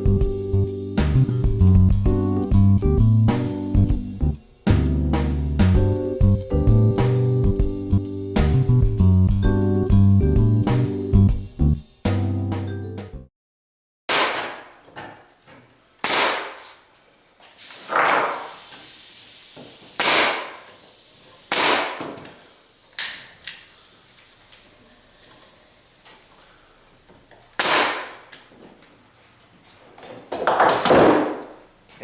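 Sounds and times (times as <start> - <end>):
nail gun firing: 14.1 - 14.9, 16.0 - 16.8, 20.0 - 20.8, 21.5 - 22.4, 27.6 - 28.4.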